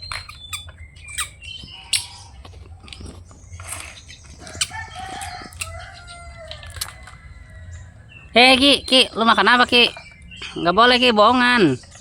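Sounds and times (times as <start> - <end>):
chickens clucking: 0.0 - 12.0
rooster crowing: 4.4 - 8.3.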